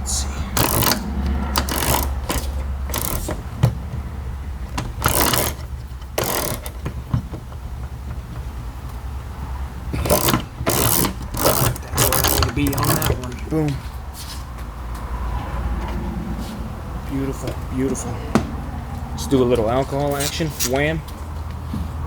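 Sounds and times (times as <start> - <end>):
steady low hum: 0.0 - 20.1
metallic clicks and rattles: 0.6 - 8.6, 10.0 - 13.4.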